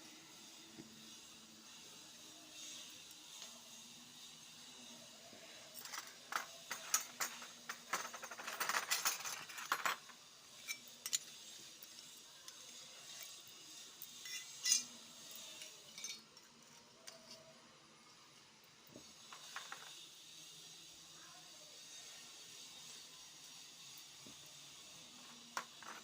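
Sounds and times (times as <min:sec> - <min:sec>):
toy kitchenware clicking and clinking: 0:05.6 - 0:13.4, 0:14.1 - 0:17.6, 0:19.2 - 0:20.0, 0:25.3 - 0:26.0.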